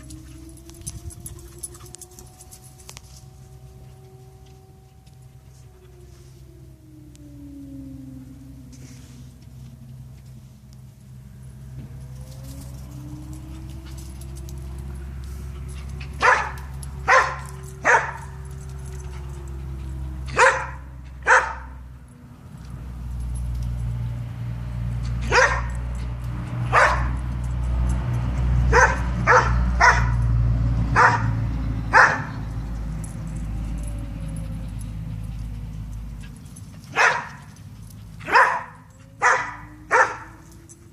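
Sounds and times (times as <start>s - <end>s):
dog barking: 16.2s - 18.4s, 20.3s - 21.8s, 25.2s - 25.7s, 26.7s - 27.2s, 28.7s - 30.2s, 31.0s - 32.4s, 36.9s - 37.5s, 38.2s - 40.4s.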